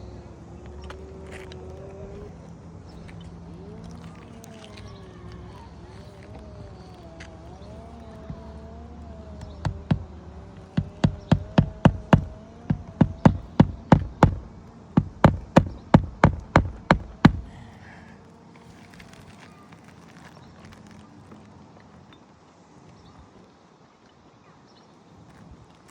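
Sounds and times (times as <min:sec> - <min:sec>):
faint wavering hum: 0:00.0 - 0:19.6
hammer striking roofing nails: 0:09.3 - 0:17.7.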